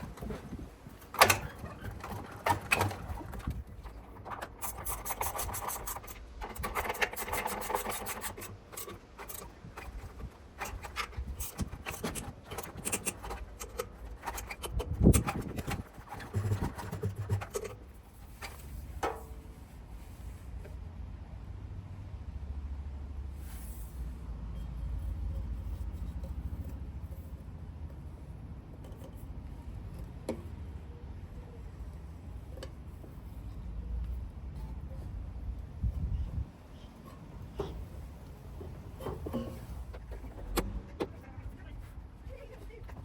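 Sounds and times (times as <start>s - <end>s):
parts clicking: 0.0s - 19.4s
parts scraping: 0.0s - 20.8s, 23.3s - 43.0s.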